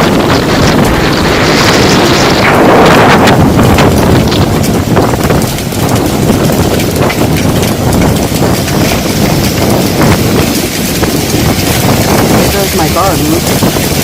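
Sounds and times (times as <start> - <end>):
hailstones clattering: 0.0 - 14.0
wind buffeting microphone: 0.0 - 14.0.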